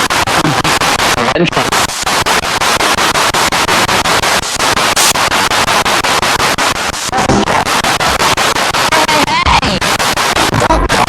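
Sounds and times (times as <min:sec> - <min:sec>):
radio static pulsing: 0:00.0 - 0:11.0.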